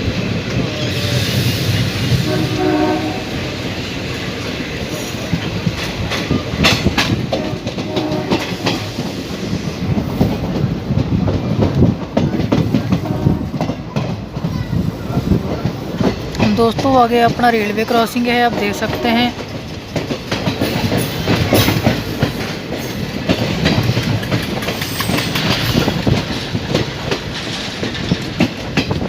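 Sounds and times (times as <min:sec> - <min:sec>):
train wheels rumbling and clattering: 0:00.0 - 0:29.0
train horn: 0:02.2 - 0:03.6, 0:07.3 - 0:09.0, 0:12.9 - 0:13.8, 0:18.5 - 0:19.4.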